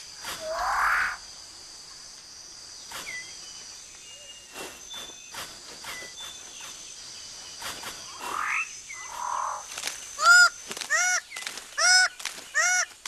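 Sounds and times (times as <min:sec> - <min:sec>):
high insect hum: 0:00.0 - 0:13.0.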